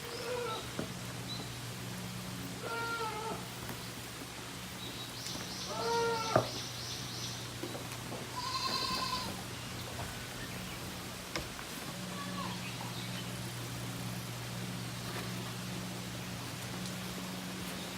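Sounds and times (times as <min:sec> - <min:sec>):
goat kid bleating: 0:00.0 - 0:00.8, 0:02.6 - 0:03.7, 0:05.7 - 0:06.6, 0:08.3 - 0:09.4, 0:11.8 - 0:12.9.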